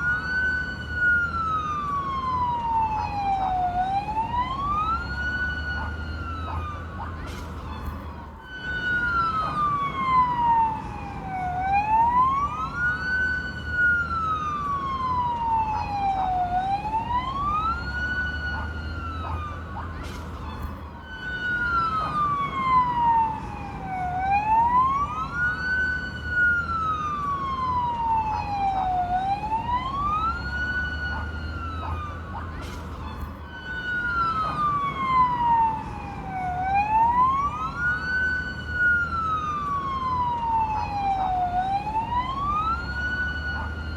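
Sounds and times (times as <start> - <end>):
fire truck siren wailing: 0.0 - 43.9.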